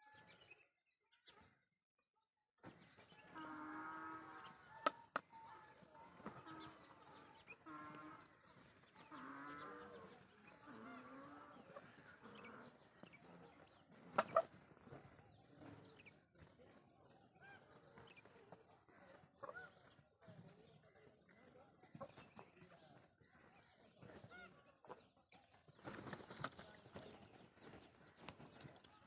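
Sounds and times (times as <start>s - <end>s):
small birds chirping: 2.6s - 29.0s
peafowl calls: 3.2s - 15.0s.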